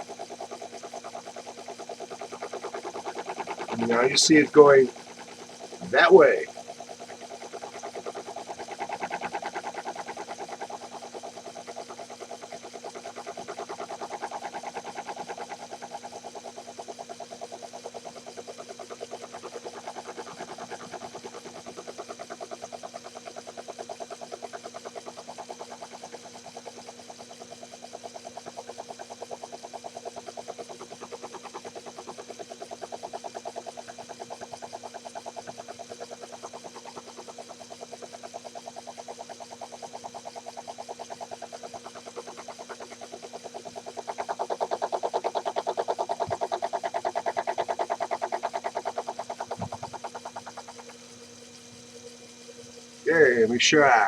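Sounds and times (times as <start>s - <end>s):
fast even ticking: 0.0s - 51.0s
lathe motor hum and whine: 0.0s - 54.0s.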